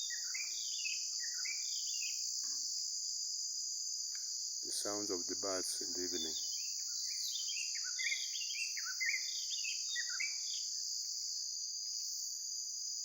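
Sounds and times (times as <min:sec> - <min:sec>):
songbird chirping: 0:00.0 - 0:02.2, 0:04.7 - 0:10.8
high-pitched insect chorus: 0:00.0 - 0:13.0.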